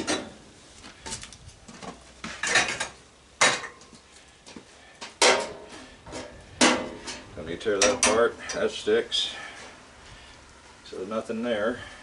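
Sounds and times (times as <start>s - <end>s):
metal stove parts clanking: 0.0s - 0.3s, 2.4s - 3.8s, 5.0s - 8.7s.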